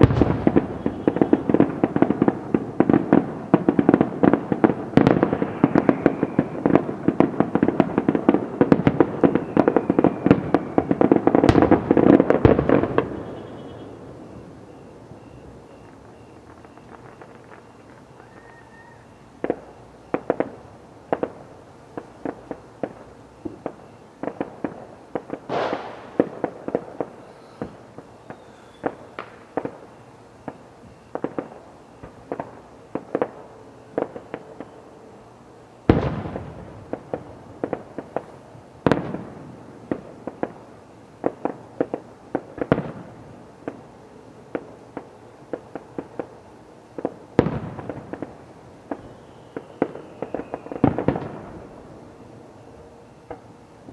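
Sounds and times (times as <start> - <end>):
loud firework booms: 0.0 - 17.8, 19.4 - 33.4, 35.9 - 40.5, 47.0 - 51.8
fireworks bangs and cracks: 0.0 - 18.5, 19.4 - 34.8, 35.9 - 51.8.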